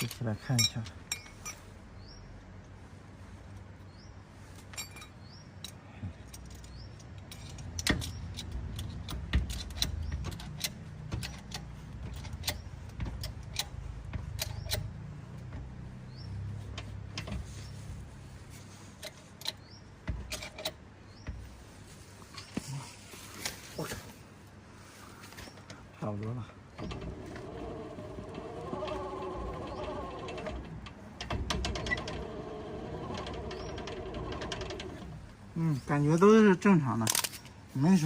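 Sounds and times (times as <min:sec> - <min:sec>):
jack clicking and clanking: 0:04.7 - 0:17.8, 0:19.0 - 0:21.6, 0:26.7 - 0:35.4.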